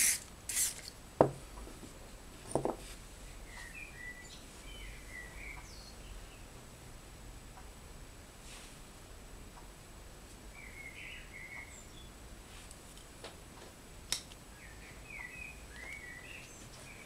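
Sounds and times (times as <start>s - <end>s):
aerosol hairspray hiss: 0.0s - 0.8s
faint bird chirps: 3.4s - 6.5s, 10.5s - 12.2s, 14.5s - 17.0s.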